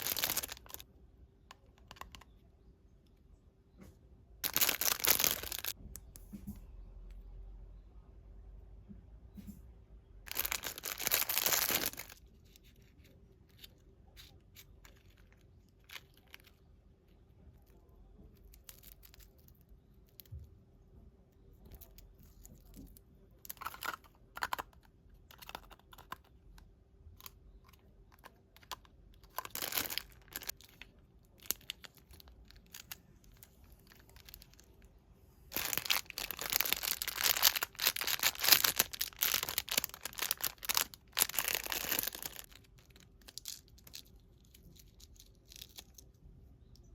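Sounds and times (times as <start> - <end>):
packaging crinkling and rustling: 0.0 - 0.8, 4.4 - 5.8, 10.3 - 16.6, 28.1 - 34.8, 35.5 - 46.1
packaging tearing: 35.5 - 42.6.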